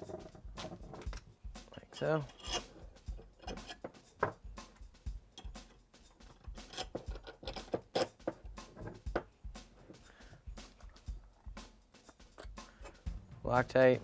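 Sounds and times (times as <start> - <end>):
metal parts clicking and knocking: 0.0 - 4.4, 5.4 - 9.3.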